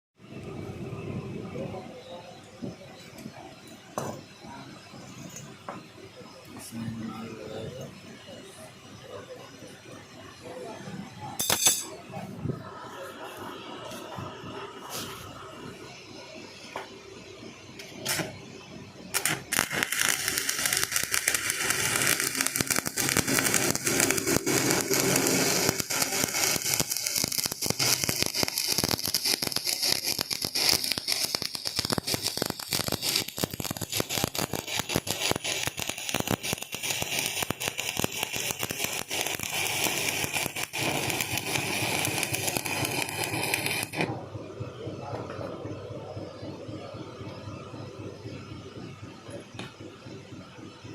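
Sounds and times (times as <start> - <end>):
electric arc welding crackle: 17.8 - 18.4, 19.1 - 44.1.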